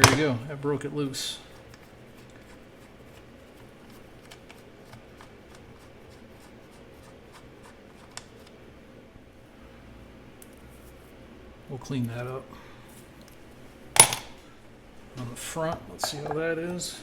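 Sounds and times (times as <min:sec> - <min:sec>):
low steady hum: 0:00.0 - 0:17.0
clicks and rubbing of metal parts: 0:01.5 - 0:06.0, 0:14.0 - 0:14.4, 0:15.7 - 0:16.8.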